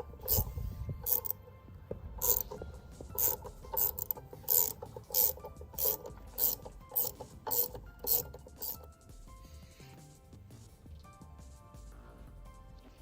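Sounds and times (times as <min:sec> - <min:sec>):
ratchet wrench rasping: 0:00.0 - 0:01.5, 0:02.2 - 0:09.0.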